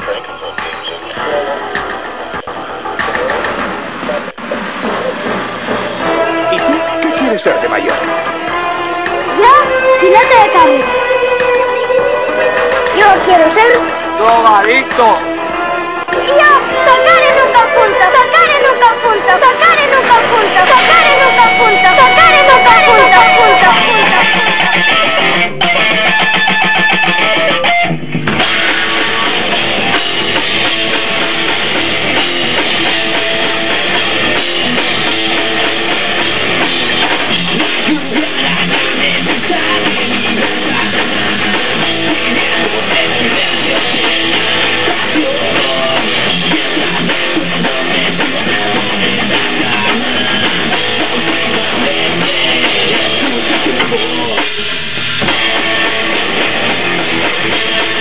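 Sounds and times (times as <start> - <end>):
drum kit: 0.0 - 11.6, 12.3 - 58.0
distorted electric guitar: 0.0 - 58.0.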